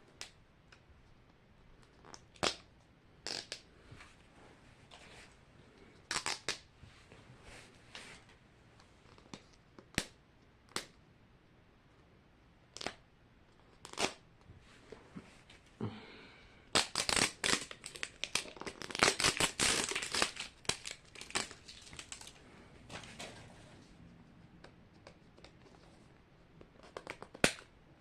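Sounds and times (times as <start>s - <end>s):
plastic wrapping crinkling and tearing: 16.7s - 23.2s.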